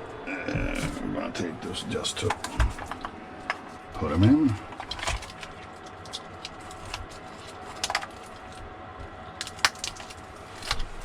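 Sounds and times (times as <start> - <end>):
small parts clicking and rattling: 4.5 - 8.6, 9.4 - 11.0.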